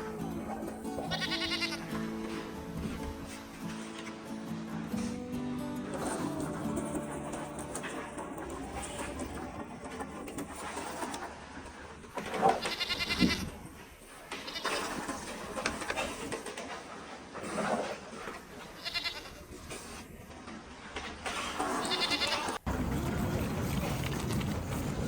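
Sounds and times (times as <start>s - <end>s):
goats bleating: 0.0s - 2.5s, 12.5s - 13.6s, 14.3s - 15.0s, 18.6s - 19.6s, 21.7s - 22.6s.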